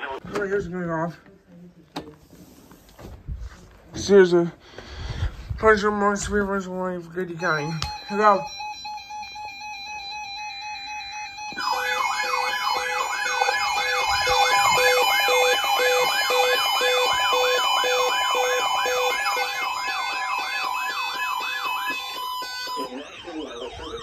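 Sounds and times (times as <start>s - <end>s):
electronic warbling siren: 7.5s - 24.0s
steady tone: 11.4s - 24.0s
low pulsing beep: 11.5s - 24.0s.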